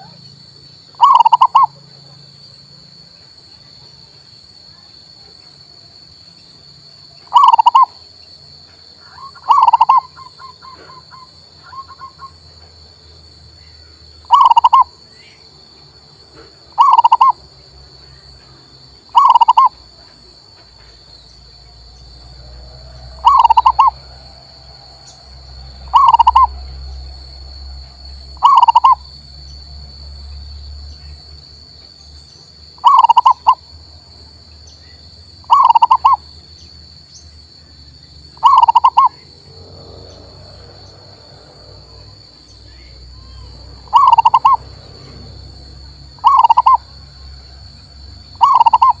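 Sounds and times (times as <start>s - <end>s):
dove cooing: 1.0s - 1.7s, 7.3s - 8.0s, 9.1s - 12.3s, 14.3s - 14.9s, 16.8s - 17.4s, 19.1s - 19.8s, 23.2s - 24.2s, 25.9s - 26.7s, 28.4s - 29.0s, 32.8s - 33.6s, 35.4s - 36.2s, 38.4s - 39.2s, 43.8s - 44.6s, 46.2s - 46.9s, 48.4s - 49.0s.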